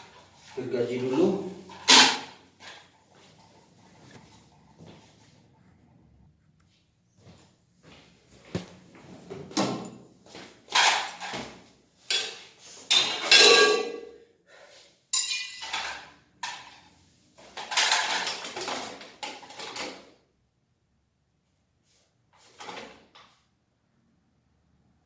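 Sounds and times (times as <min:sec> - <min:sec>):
hand tools clattering: 0:12.1 - 0:14.1, 0:15.2 - 0:16.8, 0:17.6 - 0:19.8.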